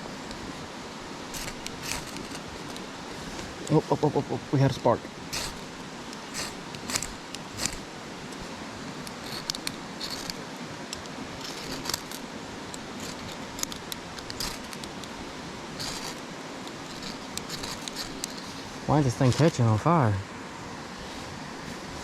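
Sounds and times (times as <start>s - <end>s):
striker scraping fire starter: 1.2s - 4.1s, 5.1s - 19.7s.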